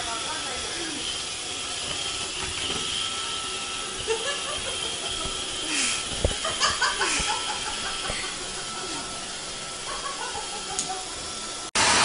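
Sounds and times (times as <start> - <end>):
vacuum cleaner running: 0.0 - 12.0.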